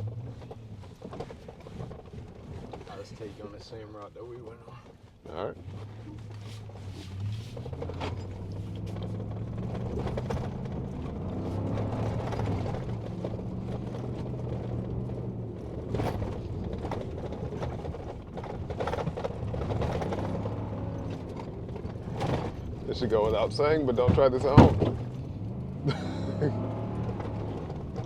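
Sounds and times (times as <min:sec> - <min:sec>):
body and suspension rattling: 0:00.0 - 0:28.0
vehicle engine running: 0:05.7 - 0:28.0.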